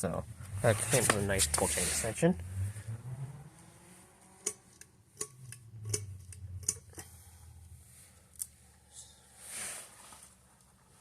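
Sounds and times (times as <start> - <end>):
sharp clicks and metallic clatter: 4.4 - 7.1.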